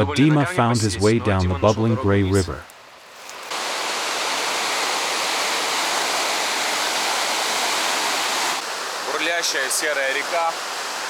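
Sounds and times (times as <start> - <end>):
river rushing over stones: 2.3 - 11.0.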